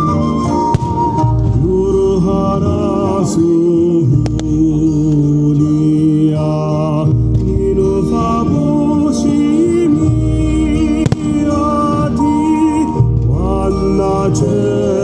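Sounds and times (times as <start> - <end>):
music with singing: 0.0 - 15.0
sharp crack: 0.4 - 3.6, 4.2 - 5.3, 10.4 - 13.9.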